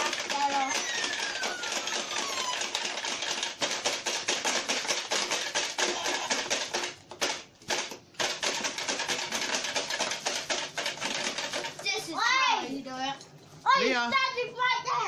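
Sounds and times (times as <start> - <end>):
plastic toy clicking and clattering: 0.0 - 12.0.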